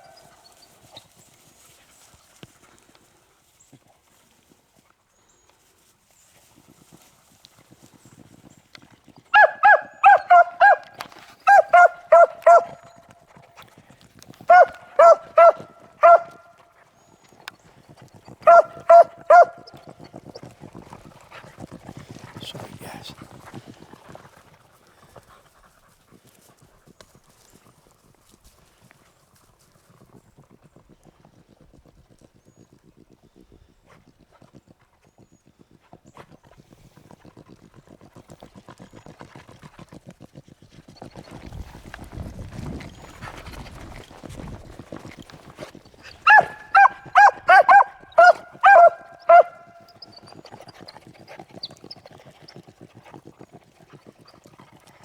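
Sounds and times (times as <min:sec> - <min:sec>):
dog barking: 0:09.4 - 0:12.8, 0:14.5 - 0:16.5, 0:18.4 - 0:19.7, 0:46.2 - 0:49.9.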